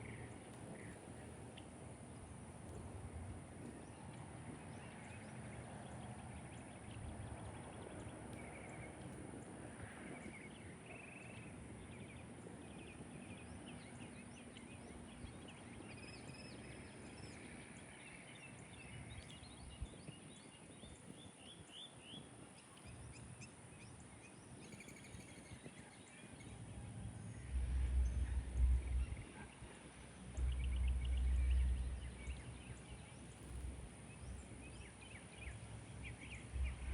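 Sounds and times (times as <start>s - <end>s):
birds chirping: 0.0s - 36.9s
loud low rumble: 26.7s - 34.9s, 35.5s - 36.9s.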